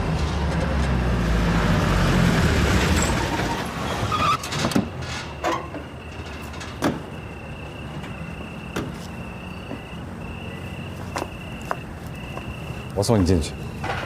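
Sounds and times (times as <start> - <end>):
crickets chirring: 4.9 - 14.0.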